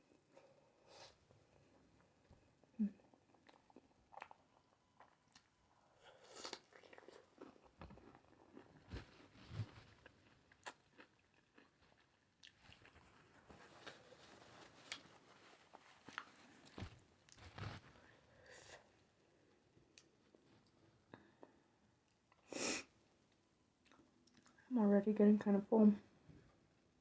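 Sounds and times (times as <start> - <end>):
person chewing food: 2.0 - 15.2.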